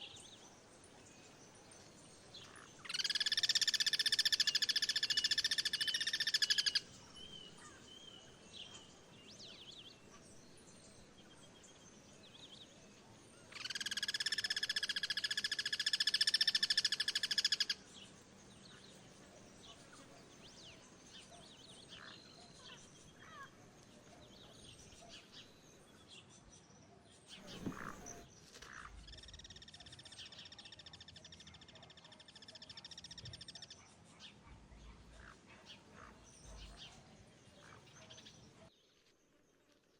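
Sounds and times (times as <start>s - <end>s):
faint bird chirps: 0.0s - 39.9s
cuckoo rattling calls: 2.8s - 6.9s, 13.5s - 17.8s, 27.3s - 28.3s
brief low thump: 27.4s - 28.1s.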